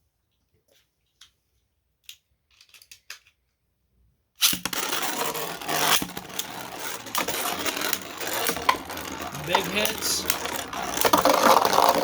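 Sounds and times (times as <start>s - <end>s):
spinning tops clashing and rattling: 4.7s - 12.0s.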